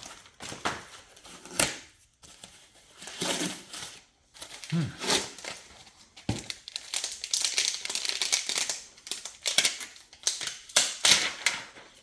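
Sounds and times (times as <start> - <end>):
plastic packaging crinkling: 3.8 - 12.0.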